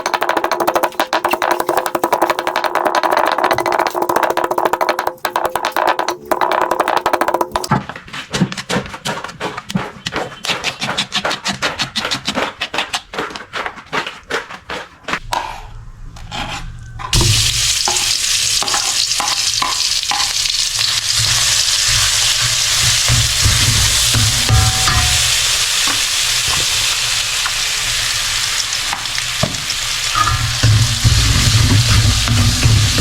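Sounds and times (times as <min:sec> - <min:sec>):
rapid clicking and tapping: 0:00.0 - 0:13.6
stirring knocks: 0:00.0 - 0:15.6, 0:17.1 - 0:27.6, 0:28.9 - 0:33.0
food sizzling in a pan: 0:17.2 - 0:33.0.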